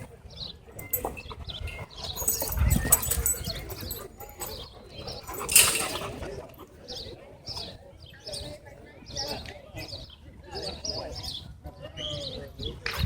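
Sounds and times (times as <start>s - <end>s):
dogs playing and scuffling: 0.8s - 7.1s.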